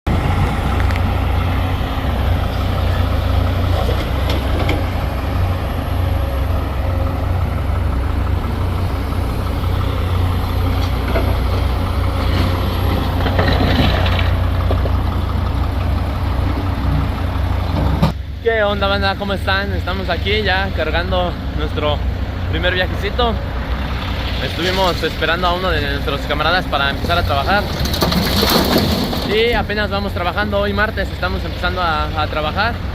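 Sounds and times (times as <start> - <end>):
diesel truck engine running: 0.1 - 32.9
brief clatters: 27.6 - 29.4.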